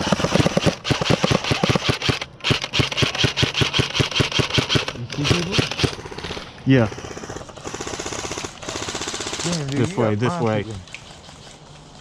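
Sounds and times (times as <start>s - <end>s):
airsoft gun rapid shots: 0.0s - 9.6s.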